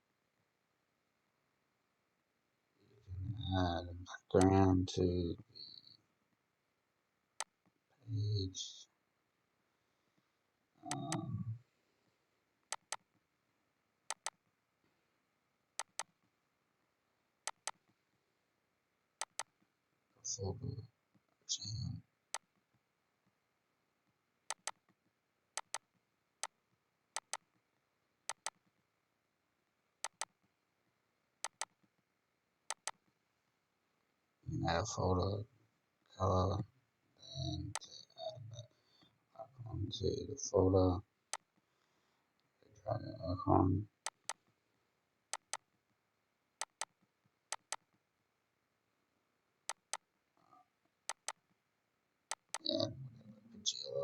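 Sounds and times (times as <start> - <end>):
computer mouse button clicking: 14.1 - 14.4, 15.8 - 16.1, 17.5 - 17.8, 19.2 - 19.5, 24.5 - 24.8, 25.6 - 25.8, 27.2 - 27.4, 28.3 - 28.6, 31.4 - 31.7, 32.7 - 33.0.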